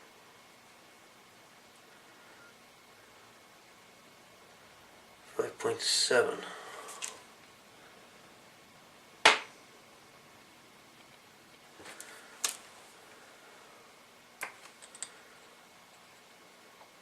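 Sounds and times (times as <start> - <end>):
small objects clicking on workbench: 14.4 - 15.2.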